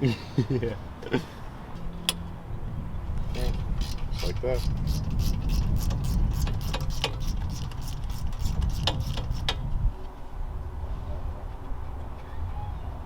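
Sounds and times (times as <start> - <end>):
socket ratchet clicking: 3.8 - 9.6.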